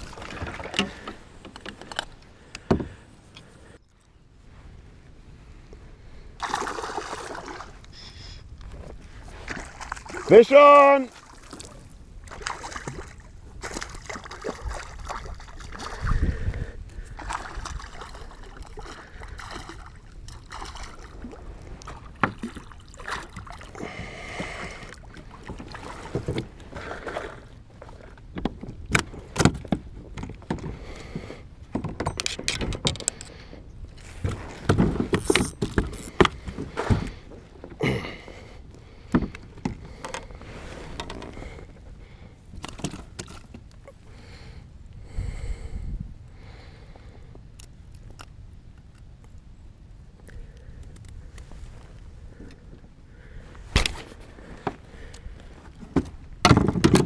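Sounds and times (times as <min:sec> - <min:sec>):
knocks and clicks in kayak: 0:00.0 - 0:03.5, 0:24.3 - 0:27.3, 0:28.0 - 0:33.4, 0:34.2 - 0:37.8, 0:39.1 - 0:41.8, 0:42.5 - 0:43.8, 0:53.7 - 0:57.0.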